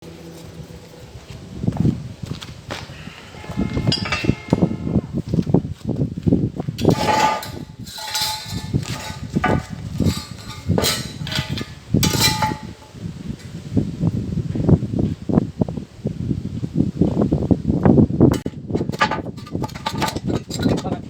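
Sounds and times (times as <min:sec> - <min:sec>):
steel pieces knocking and clinking: 0:03.6 - 0:04.8, 0:06.8 - 0:13.0, 0:18.4 - 0:21.0.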